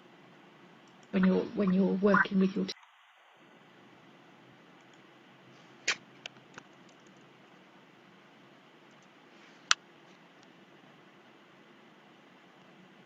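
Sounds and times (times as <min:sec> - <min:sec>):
faint steady hiss: 0:00.0 - 0:13.0
computer clicks: 0:06.5 - 0:07.3.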